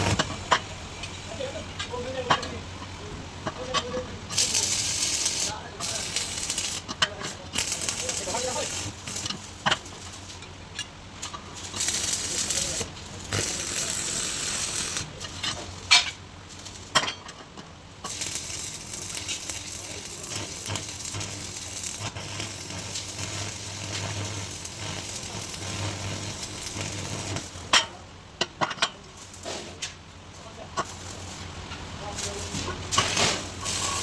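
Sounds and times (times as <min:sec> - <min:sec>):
arc welding crackling: 0:00.0 - 0:28.0, 0:28.7 - 0:34.0.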